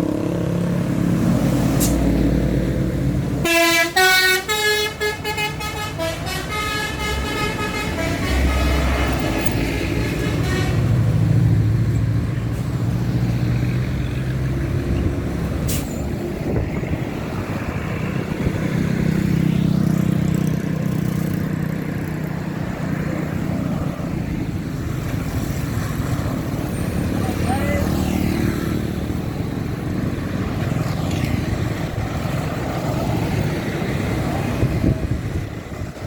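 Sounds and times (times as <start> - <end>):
heavy vehicles driving past: 0.0 - 36.0
multi-tone horn: 3.4 - 11.0.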